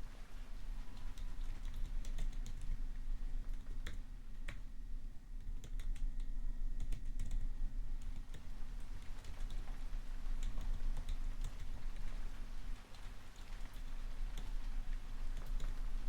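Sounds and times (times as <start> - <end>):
rain: 0.0 - 4.6, 8.3 - 16.0
keyboard typing: 1.1 - 2.7, 5.6 - 7.4.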